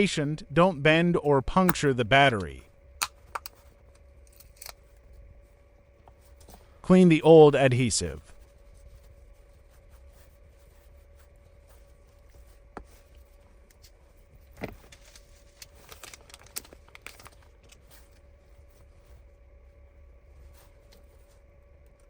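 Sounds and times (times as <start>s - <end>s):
faint steady hum: 0.0s - 22.0s.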